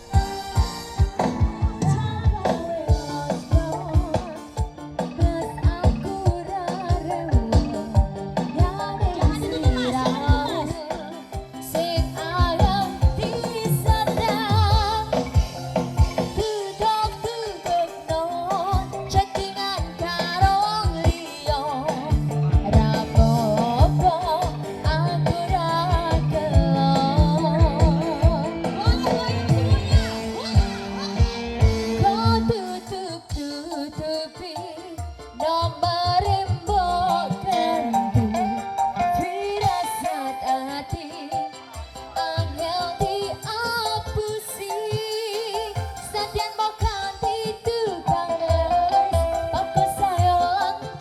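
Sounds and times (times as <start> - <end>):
steady drum beat: 0.0 - 34.1
song with vibrato vocals: 0.0 - 51.0
woman singing ornamented melody: 31.8 - 51.0.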